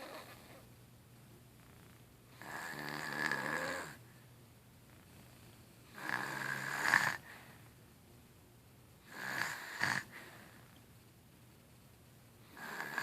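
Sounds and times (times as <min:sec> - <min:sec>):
baby snoring: 0:00.0 - 0:00.6, 0:02.4 - 0:04.0, 0:05.9 - 0:07.3, 0:09.1 - 0:10.2, 0:12.5 - 0:13.0.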